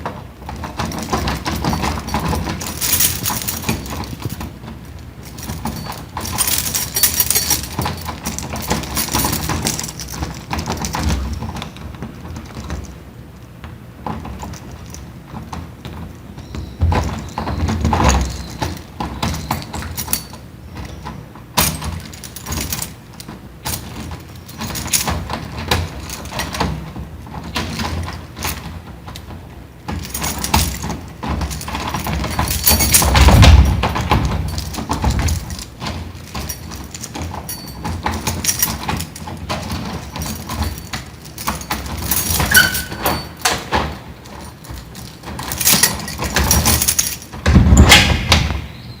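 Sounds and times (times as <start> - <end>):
door lock clicking and rattling: 0.5 - 13.0, 29.9 - 48.6.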